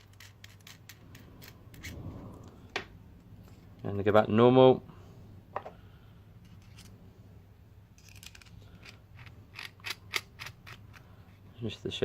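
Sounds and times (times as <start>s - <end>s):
small metal parts clicking: 0.0s - 1.9s, 8.0s - 11.1s
scratchy handling noise: 0.0s - 3.8s, 6.4s - 7.0s, 8.0s - 11.1s.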